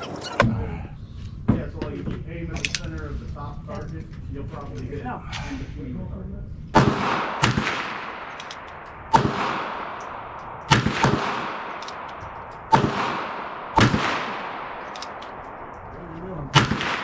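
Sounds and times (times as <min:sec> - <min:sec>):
revolver shots with echo: 0:09.0 - 0:17.0.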